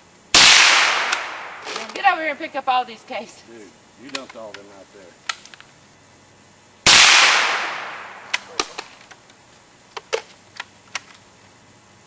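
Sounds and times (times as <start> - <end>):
gunshot echo: 0.4 - 1.8, 6.9 - 8.9
light sharp clicks: 4.0 - 4.7.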